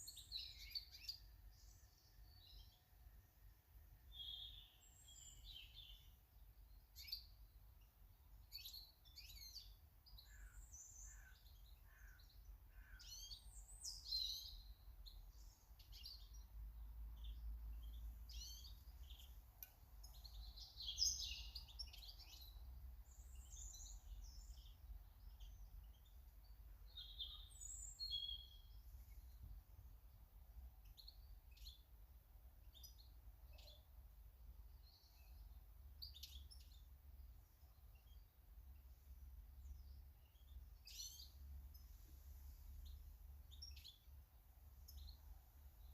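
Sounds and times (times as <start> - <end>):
birds chirping: 8.6 - 29.4, 34.7 - 45.9.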